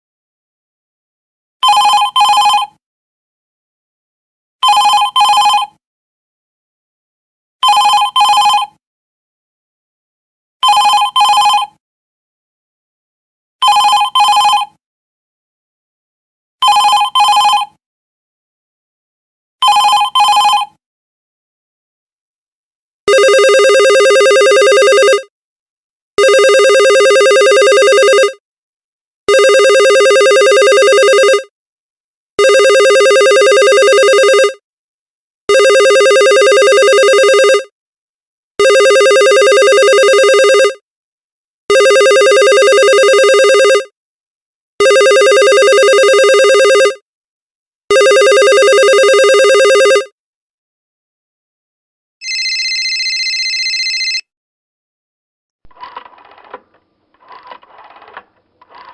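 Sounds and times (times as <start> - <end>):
telephone ringing: 1.6 - 2.8, 4.6 - 5.8, 7.6 - 8.8, 10.6 - 11.8, 13.6 - 14.8, 16.6 - 17.8, 19.6 - 20.8, 23.1 - 25.3, 26.2 - 28.4, 29.3 - 31.5, 32.4 - 34.6, 35.5 - 37.7, 38.6 - 40.8, 41.7 - 43.9, 44.8 - 47.0, 47.9 - 50.2, 52.2 - 54.3, 55.7 - 58.9
higher-pitched phone ring: 23.1 - 25.3, 26.2 - 28.4, 29.3 - 31.5, 32.4 - 34.6, 35.5 - 37.7, 38.6 - 40.8, 41.7 - 43.9, 44.8 - 47.0, 47.9 - 50.2, 52.2 - 54.3.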